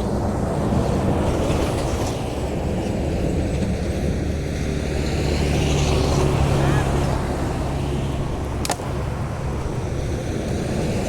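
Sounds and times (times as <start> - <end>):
passing vehicle engine rumble: 0.0 - 11.0.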